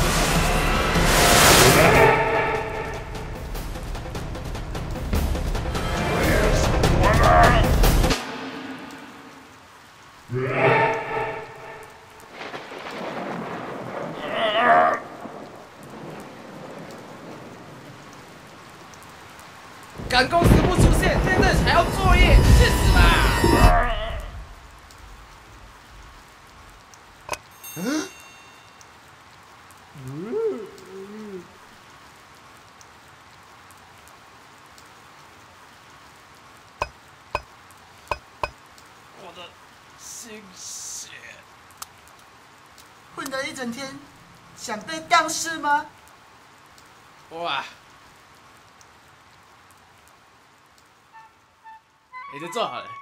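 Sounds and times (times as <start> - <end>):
thunder: 0.0 - 3.4, 12.3 - 17.9, 20.0 - 24.6
rain falling: 0.0 - 53.0.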